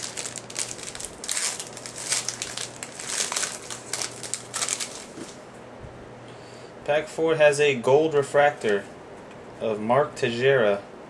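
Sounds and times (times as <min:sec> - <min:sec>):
wrapper crinkling and tearing: 0:00.0 - 0:05.4.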